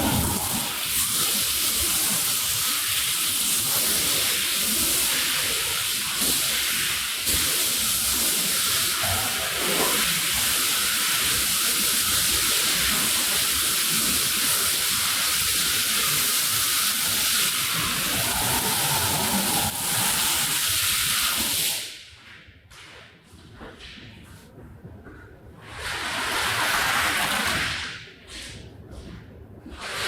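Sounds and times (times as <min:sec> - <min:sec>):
water spray hissing: 0:00.0 - 0:02.9, 0:03.8 - 0:22.0.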